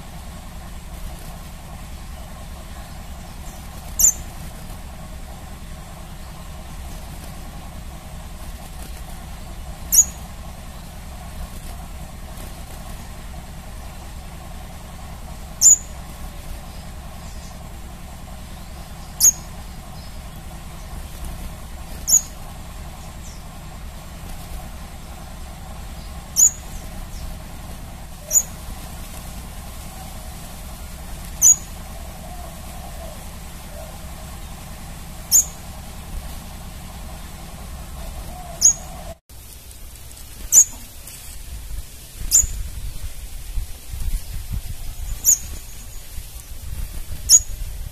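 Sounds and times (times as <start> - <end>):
low background hum: 0.0 - 47.9
bird chirps: 2.0 - 4.4, 9.8 - 11.0, 15.3 - 16.0, 18.5 - 21.3, 21.9 - 23.6, 25.9 - 27.4, 28.2 - 28.6, 31.4 - 34.0, 35.3 - 35.7, 38.0 - 39.2, 40.5 - 40.9, 42.3 - 42.6, 44.9 - 46.1, 47.2 - 47.6.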